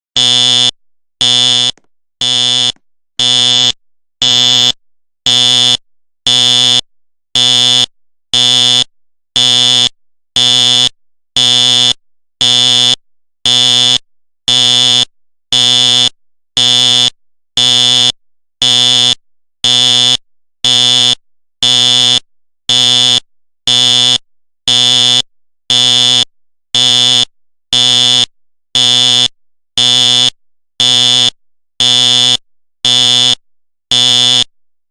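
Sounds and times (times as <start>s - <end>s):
fire alarm buzzing: 0.2s - 6.8s, 7.4s - 27.2s, 27.8s - 28.2s, 28.8s - 34.5s.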